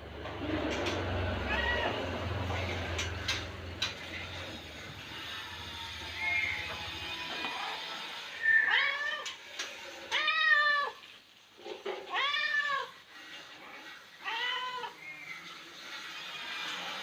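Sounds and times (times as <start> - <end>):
cat meowing: 1.5 - 2.0, 8.5 - 9.3, 10.1 - 11.0, 12.1 - 13.0.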